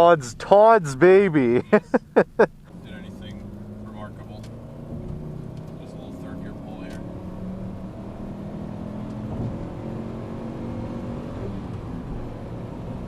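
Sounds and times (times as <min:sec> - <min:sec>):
car engine accelerating hard: 0:02.2 - 0:13.0.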